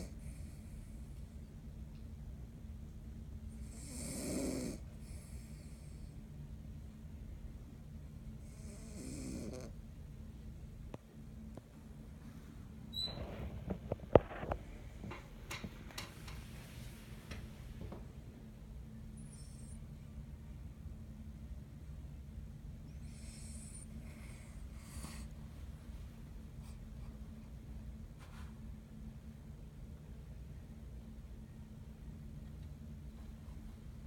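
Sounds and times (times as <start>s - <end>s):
pet snoring: 0.0s - 1.0s, 3.6s - 6.1s, 8.4s - 9.8s, 22.9s - 25.3s
sharp clicks and knocks: 13.7s - 16.4s.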